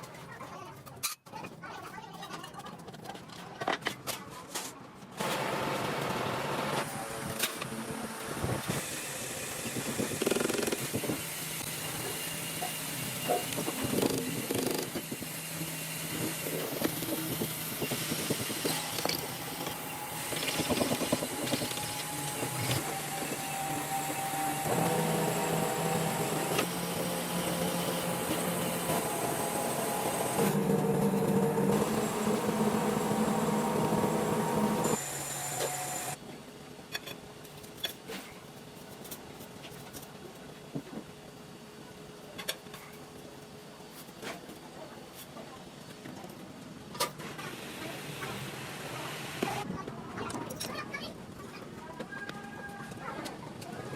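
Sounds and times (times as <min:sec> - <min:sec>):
factory machinery humming: 0:05.2 - 0:36.2
machinery clicks and clanks: 0:09.8 - 0:36.2.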